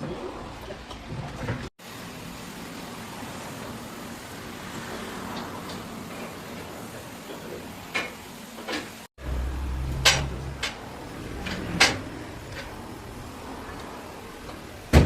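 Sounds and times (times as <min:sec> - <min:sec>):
knocks and clanks: 0:07.9 - 0:12.8, 0:14.4 - 0:15.0
low hum: 0:09.2 - 0:14.4.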